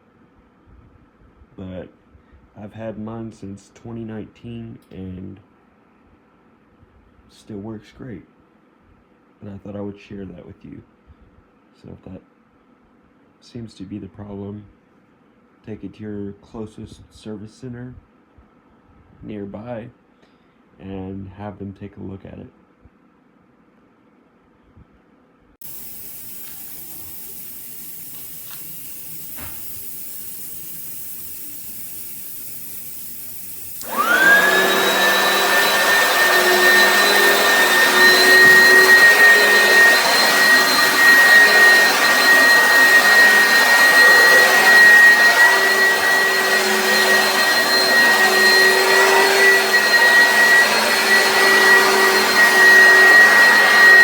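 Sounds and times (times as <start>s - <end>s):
faint steady hiss: 25.6s - 34.5s
vacuum cleaner motor whine: 25.6s - 54.0s.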